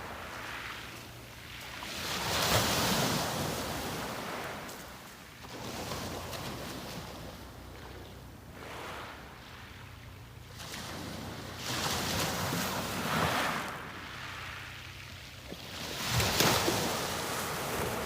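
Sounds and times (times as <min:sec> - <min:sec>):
sea waves washing onto beach: 0:15.4 - 0:18.0.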